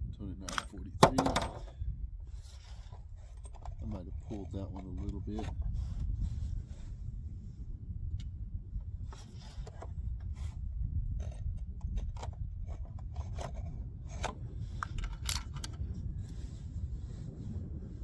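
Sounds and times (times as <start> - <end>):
steady low rumble: 0.0 - 18.0
rifle handling clicks and scrapes: 1.4 - 6.8, 9.0 - 16.5.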